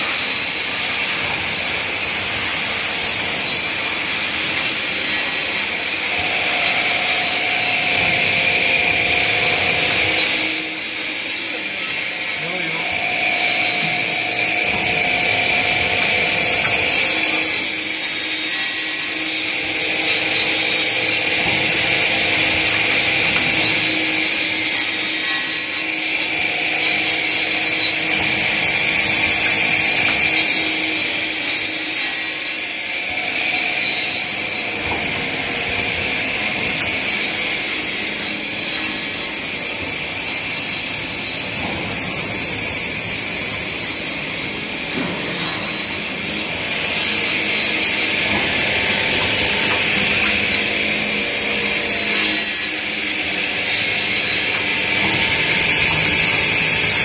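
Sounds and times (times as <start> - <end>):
band saw cutting metal tube: 0.0 - 57.0.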